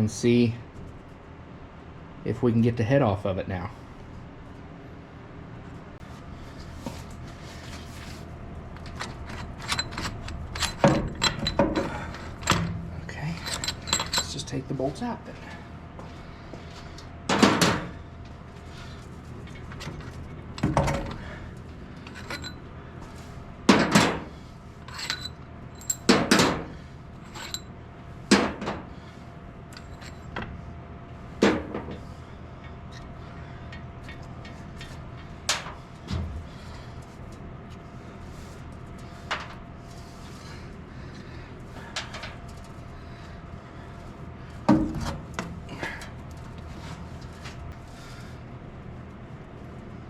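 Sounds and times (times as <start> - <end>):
metallic clanks of hand tools: 8.8 - 14.4.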